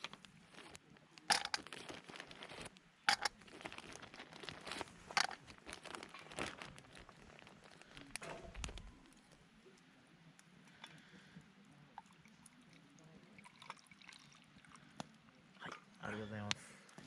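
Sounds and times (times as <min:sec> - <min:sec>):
crinkling and rustling: 0:00.0 - 0:09.7.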